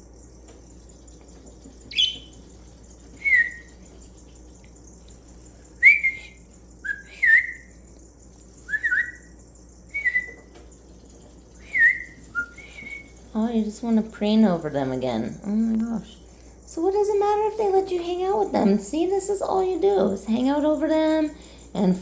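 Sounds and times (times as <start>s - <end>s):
pet bird whistled chirps: 1.9s - 2.4s, 3.2s - 3.8s, 5.8s - 7.7s, 8.6s - 9.3s, 9.9s - 10.5s, 11.6s - 13.2s.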